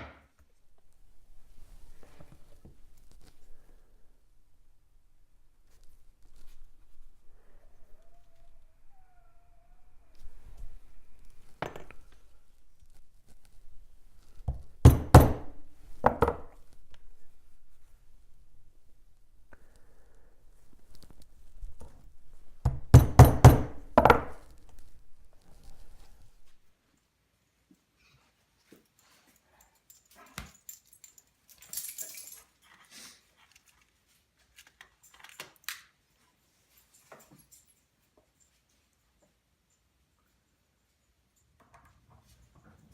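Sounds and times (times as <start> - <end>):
light metal clinks: 28.9 - 32.9, 36.6 - 42.9.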